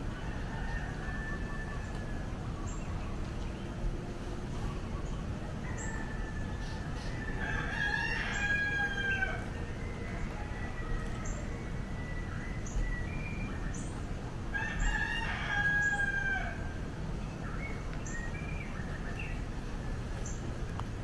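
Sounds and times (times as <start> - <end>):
roosters crowing: 0.0 - 17.3.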